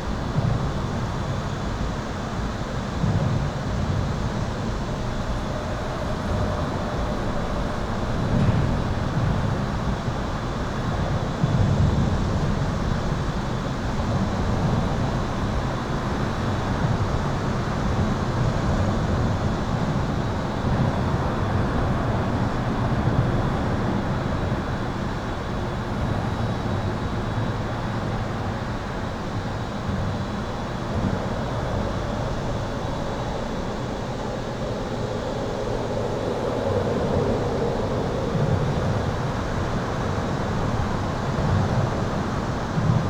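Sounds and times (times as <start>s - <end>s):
highway traffic rumble: 29.8s - 43.0s.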